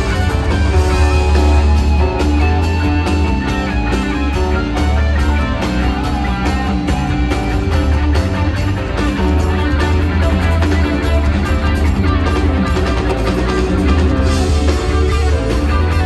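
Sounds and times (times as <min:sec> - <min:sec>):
electric guitar: 0:00.0 - 0:16.0
heavy bass: 0:00.0 - 0:16.0
steady drum beat: 0:00.0 - 0:16.0.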